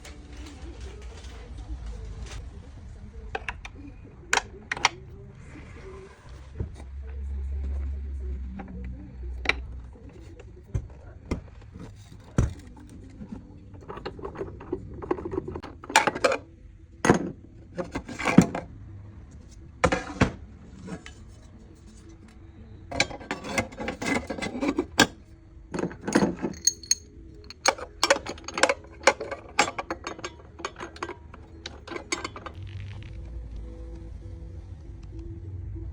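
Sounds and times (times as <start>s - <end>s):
faint steady hum: 0.0s - 35.9s
metal tools clinking: 25.8s - 32.6s.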